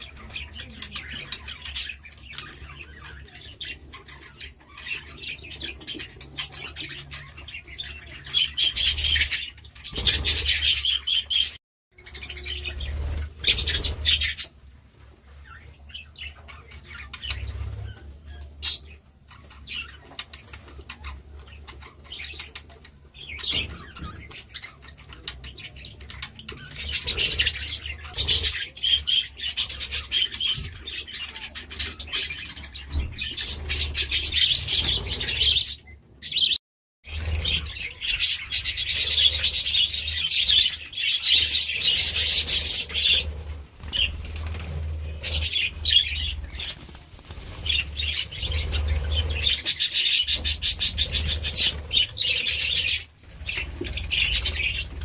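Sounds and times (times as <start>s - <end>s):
budgerigars chirping: 15.5s - 55.0s.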